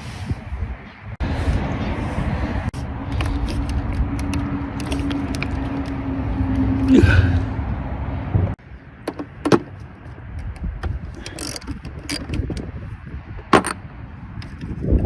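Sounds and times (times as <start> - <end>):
tools clicking and clacking: 3.1 - 6.0, 10.4 - 12.7.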